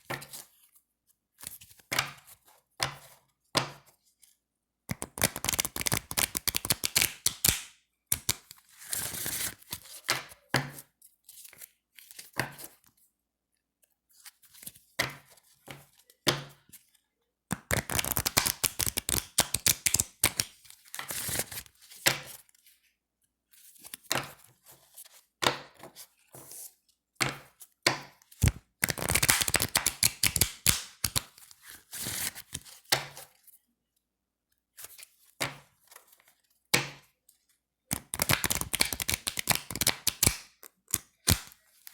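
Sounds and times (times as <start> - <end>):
playing cards being shuffled: 4.9 - 9.8, 17.6 - 21.7, 28.4 - 32.8, 37.9 - 41.9.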